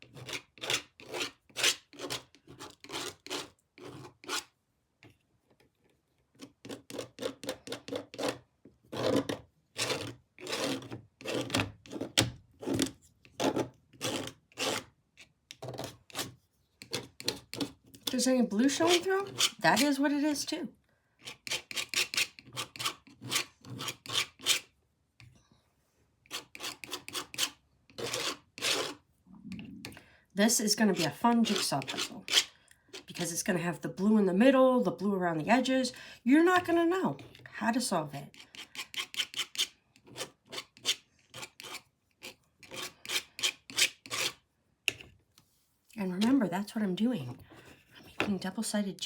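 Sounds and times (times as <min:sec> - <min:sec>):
paint tool rasping on puzzle: 0:00.0 - 0:04.5, 0:06.4 - 0:14.9, 0:18.6 - 0:19.9, 0:21.2 - 0:24.7, 0:26.3 - 0:29.0, 0:30.9 - 0:33.1, 0:38.3 - 0:44.4.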